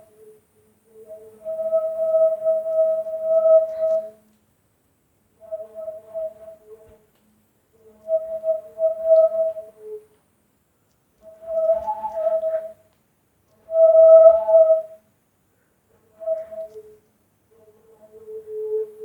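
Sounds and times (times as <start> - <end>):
hollow whistle-like tone: 0.9 - 4.3, 7.8 - 10.1, 11.2 - 12.8, 13.6 - 15.1, 16.0 - 17.1, 17.8 - 19.0.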